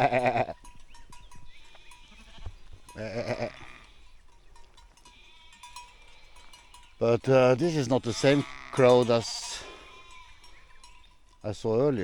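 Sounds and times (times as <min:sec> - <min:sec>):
sheep bleating: 0:00.0 - 0:00.6, 0:01.6 - 0:04.2, 0:05.0 - 0:11.1.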